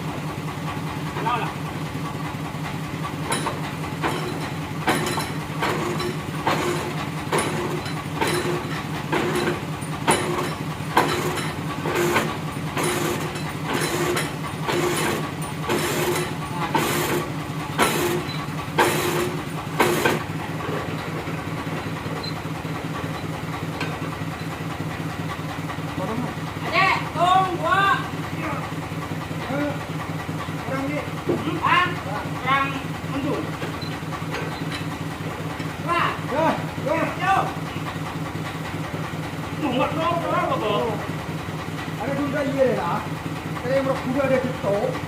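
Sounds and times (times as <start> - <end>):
engine running: 0.0 - 45.0
sharp knocks: 17.8 - 18.2.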